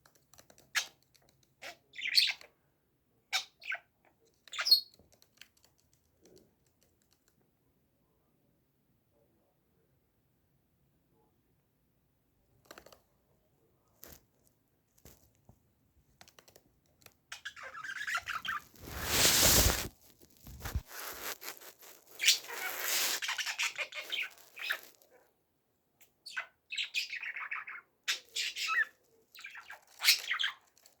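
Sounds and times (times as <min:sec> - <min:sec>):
birds chirping and squawking: 0:26.3 - 0:30.6.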